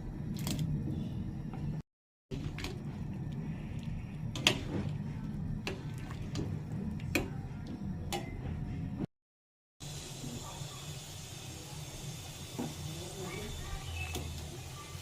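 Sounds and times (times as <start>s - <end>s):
steady low rumble: 0.0s - 9.1s.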